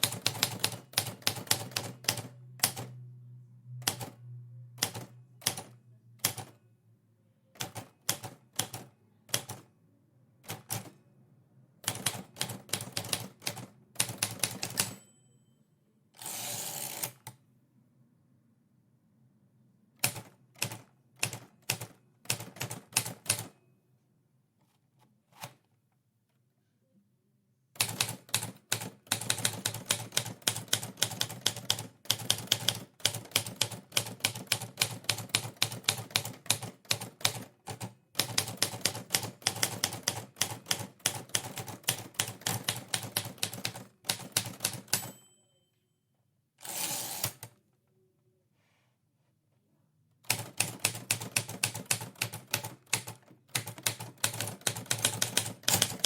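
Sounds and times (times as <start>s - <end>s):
typewriter bell ding: 14.6s - 15.6s, 44.6s - 45.8s
typewriter keys striking: 50.3s - 56.0s.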